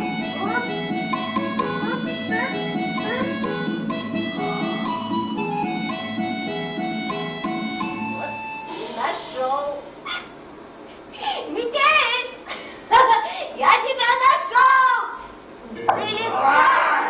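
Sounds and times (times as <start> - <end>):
instrumental music with sliding melody: 0.0 - 9.5.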